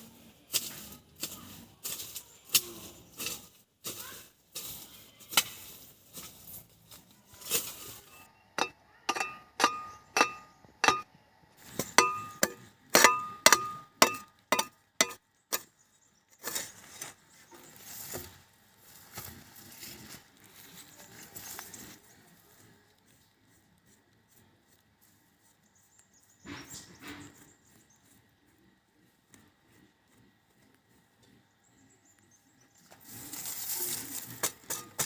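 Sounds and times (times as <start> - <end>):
metallic clinks and knocks: 8.6 - 11.1.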